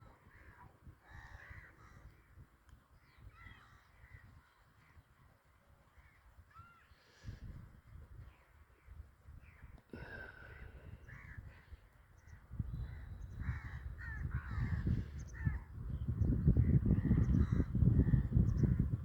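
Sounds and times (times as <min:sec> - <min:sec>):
crows cawing: 0:00.3 - 0:02.3, 0:10.0 - 0:15.7.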